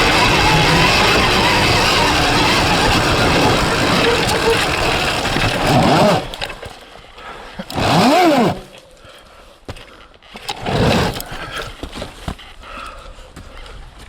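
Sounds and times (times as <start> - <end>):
electric motor whine: 0.0 - 6.7, 7.7 - 8.7
bike knocks and rattles: 0.0 - 8.8.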